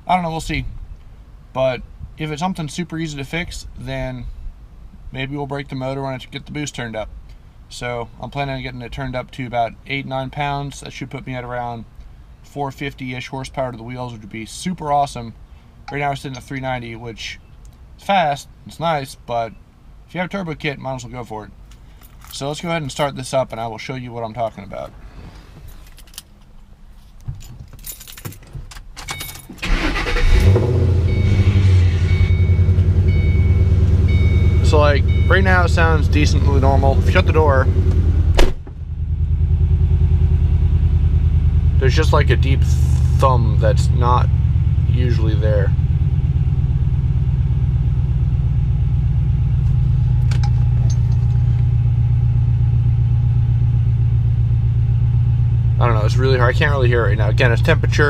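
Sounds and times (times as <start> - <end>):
keys jangling: 25.7 - 26.4, 27.3 - 29.6
car engine starting and idling: 28.6 - 58.0.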